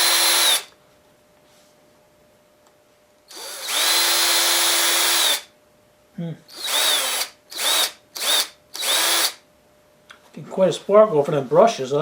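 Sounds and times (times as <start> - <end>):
cordless drill motor whining: 0.0 - 0.7, 3.3 - 5.5, 6.5 - 9.4.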